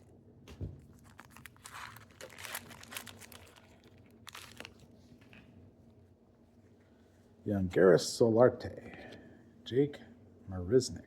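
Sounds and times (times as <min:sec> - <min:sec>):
wrapper tearing and crinkling: 0:00.9 - 0:04.8
cards shuffling: 0:01.0 - 0:03.7.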